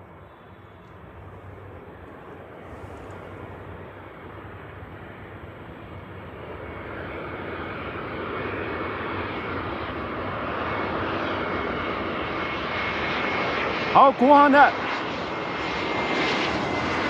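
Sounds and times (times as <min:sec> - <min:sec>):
jet engines rushing: 0:00.0 - 0:17.0.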